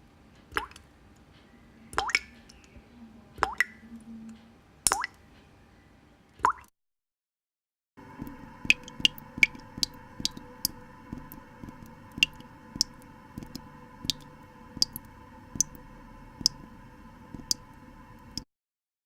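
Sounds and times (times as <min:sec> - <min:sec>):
water drops dripping: 0:00.5 - 0:00.8, 0:01.9 - 0:02.8, 0:03.4 - 0:03.8, 0:04.9 - 0:05.2, 0:06.4 - 0:06.7, 0:08.0 - 0:18.4
faint steady hum: 0:08.0 - 0:18.5.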